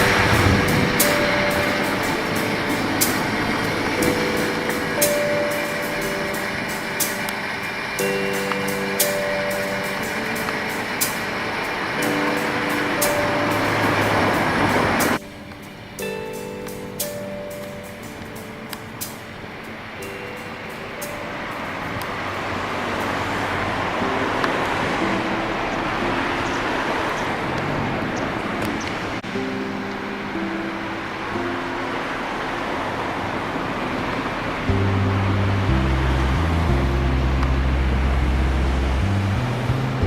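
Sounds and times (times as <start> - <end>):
moving vehicle rushing noise: 0.0 - 15.2
engine running: 0.0 - 29.2, 32.1 - 40.0
background music with held chords: 0.0 - 40.0
steady rushing noise: 0.0 - 40.0
wind: 0.0 - 40.0.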